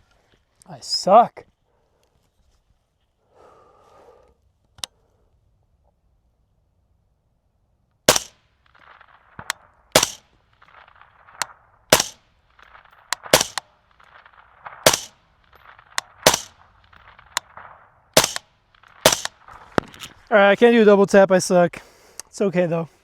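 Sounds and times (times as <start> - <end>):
bullet pinging steel target: 8.1 - 13.8, 14.6 - 20.0
suppressed rifle shots: 8.1 - 20.3.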